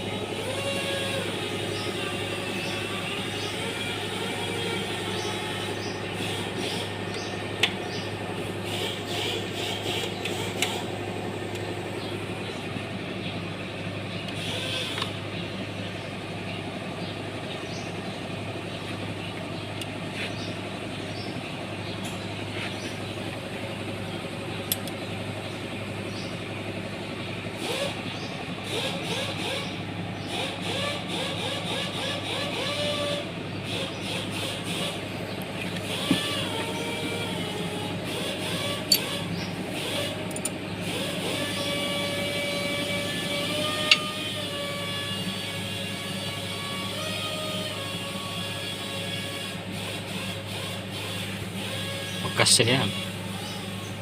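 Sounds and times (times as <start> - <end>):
tractor engine running: 0.0 - 54.0
sharp clicks: 24.6 - 25.0.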